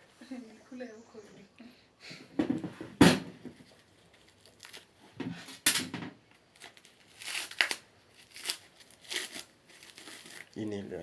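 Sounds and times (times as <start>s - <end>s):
material crinkling and rustling: 3.4s - 5.6s, 6.3s - 11.0s.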